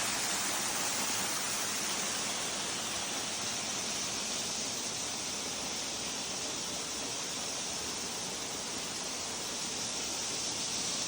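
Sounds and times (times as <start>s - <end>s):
waterfall rushing: 0.0s - 5.2s.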